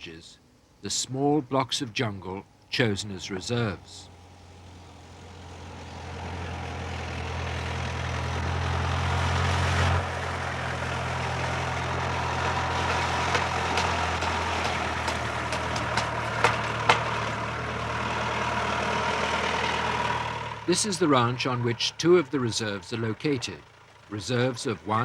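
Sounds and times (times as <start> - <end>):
heavy engine running: 3.2 - 25.0
sharp clicks and knocks: 11.4 - 17.4.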